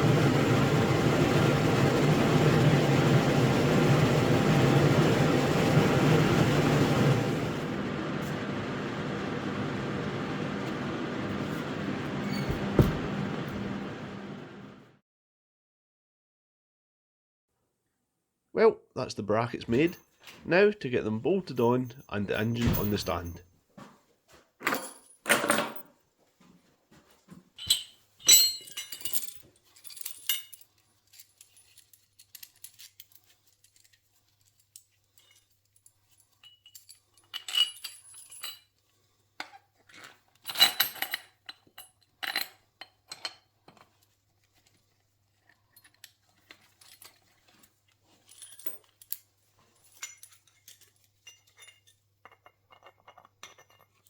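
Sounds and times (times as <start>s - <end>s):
metal tools clinking and rattling: 27.6s - 38.8s, 39.9s - 44.1s, 45.4s - 54.0s.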